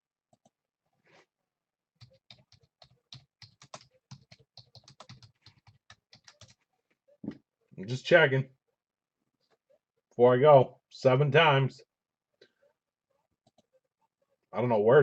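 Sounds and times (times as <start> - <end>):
computer keyboard typing: 2.0 - 6.6.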